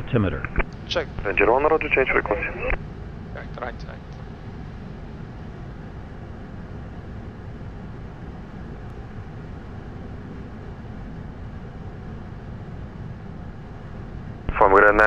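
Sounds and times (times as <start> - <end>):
jet engines running: 0.0 - 15.0.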